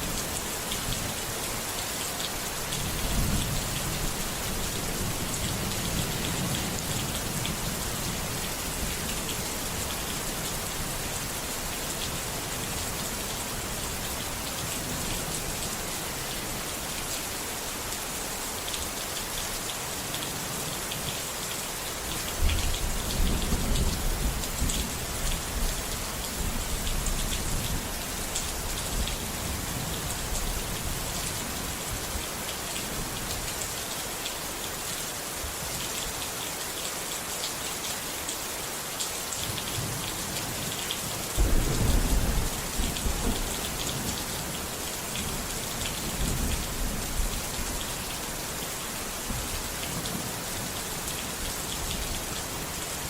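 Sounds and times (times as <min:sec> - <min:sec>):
steady rain falling: 0:00.0 - 0:53.0
thunder rumbling: 0:41.4 - 0:43.6.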